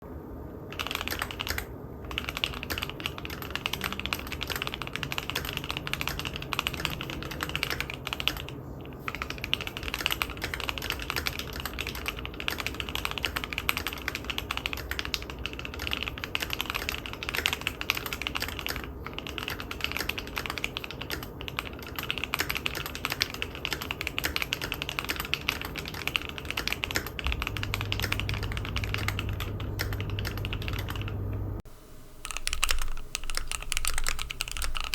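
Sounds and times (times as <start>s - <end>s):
mechanical keyboard typing: 0.7s - 31.4s, 32.1s - 34.9s.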